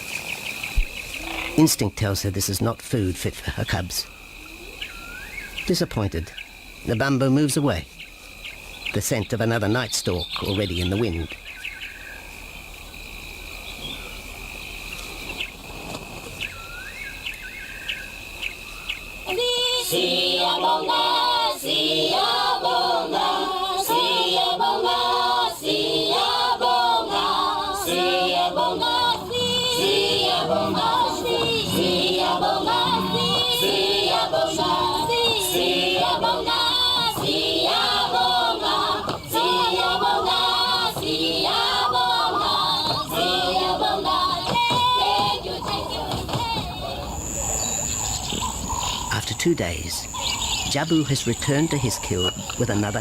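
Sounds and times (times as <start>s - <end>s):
steady high whine: 11.9s - 53.0s
choral singing: 19.2s - 47.4s.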